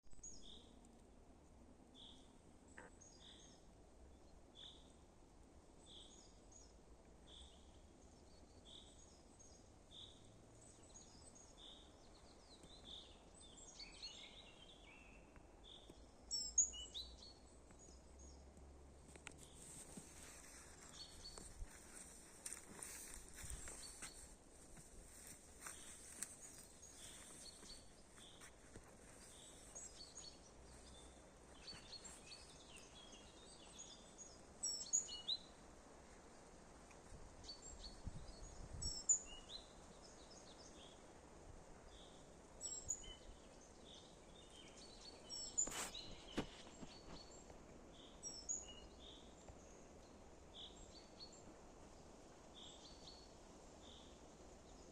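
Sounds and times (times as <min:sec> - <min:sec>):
faint steady hiss: 0:00.1 - 0:54.9
birds chirping: 0:19.3 - 0:35.6.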